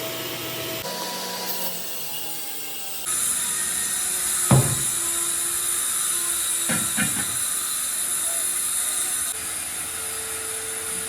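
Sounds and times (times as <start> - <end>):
sharp knock: 4.5 - 4.9.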